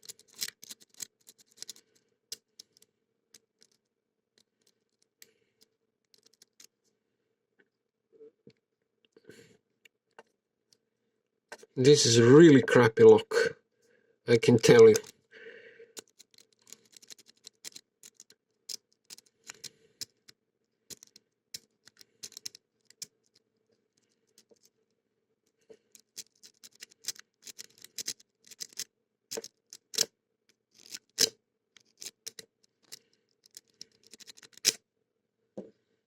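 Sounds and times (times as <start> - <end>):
lock pick clicking in padlock: 32.0 - 34.8.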